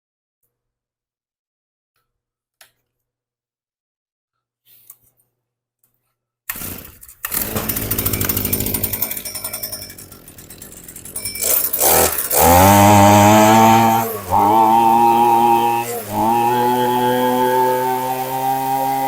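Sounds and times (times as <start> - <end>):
string trimmer engine revving: 6.6 - 19.0.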